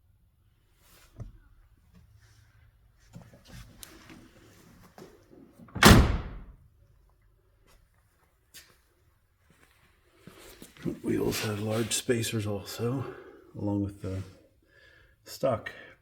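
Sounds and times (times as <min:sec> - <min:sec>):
soft handling and rustling: 0:00.5 - 0:05.6, 0:06.9 - 0:13.0
car door slamming: 0:05.8 - 0:06.6.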